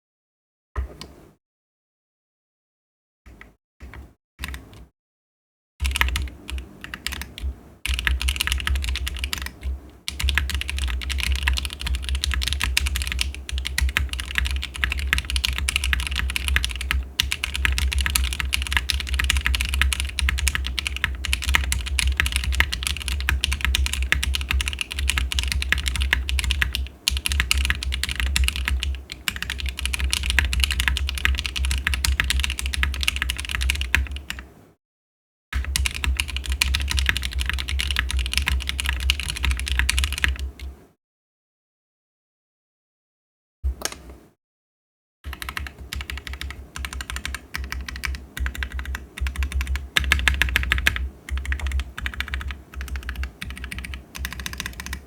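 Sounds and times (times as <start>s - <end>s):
mechanical keyboard typing: 5.8s - 34.5s, 35.6s - 40.6s, 45.3s - 55.0s.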